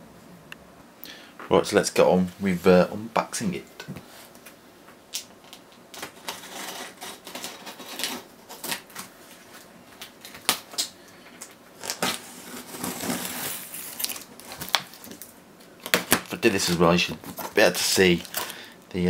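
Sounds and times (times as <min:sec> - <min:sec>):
cardboard parcel rustling and scraping: 0:06.1 - 0:09.6, 0:11.8 - 0:15.2.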